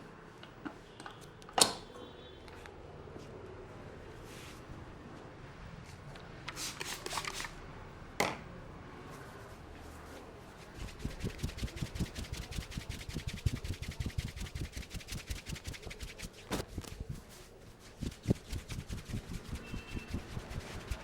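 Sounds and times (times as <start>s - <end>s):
hair being rubbed: 10.6s - 21.0s
hands patting head: 10.8s - 21.0s.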